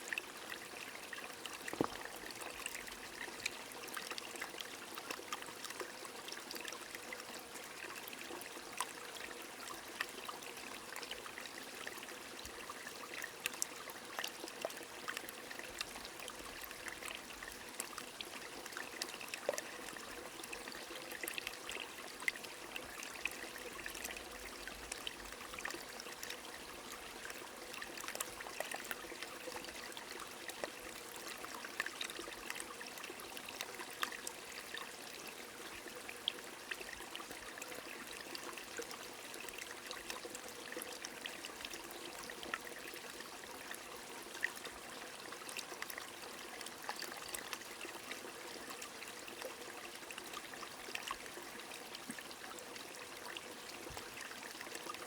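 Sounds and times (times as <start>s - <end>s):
stream running: 0.0s - 55.0s.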